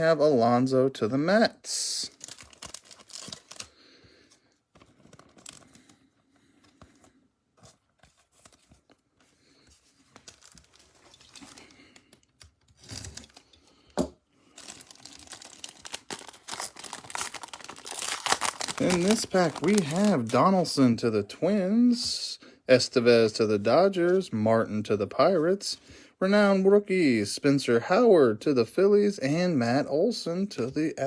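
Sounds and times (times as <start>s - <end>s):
plastic wrappers tearing and crinkling: 2.1s - 3.8s, 4.8s - 6.0s, 10.0s - 13.6s, 14.5s - 20.5s.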